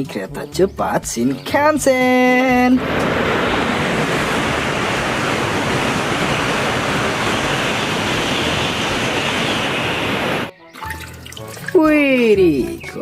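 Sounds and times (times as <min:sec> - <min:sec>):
running water rushing: 0:02.8 - 0:12.9.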